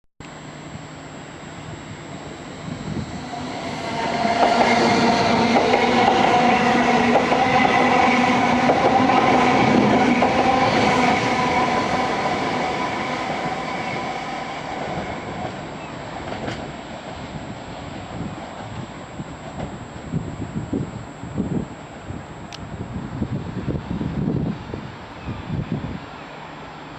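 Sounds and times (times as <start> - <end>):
train whine: 0.2 - 26.9
train wheels clicking over rail joints: 4.0 - 12.0, 16.2 - 17.3.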